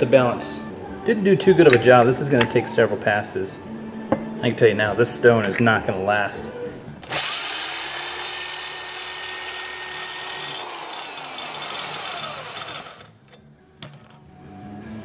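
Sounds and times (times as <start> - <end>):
impact wrench motor whine: 7.0 - 14.2
stone grinding on metal blade: 13.8 - 14.2.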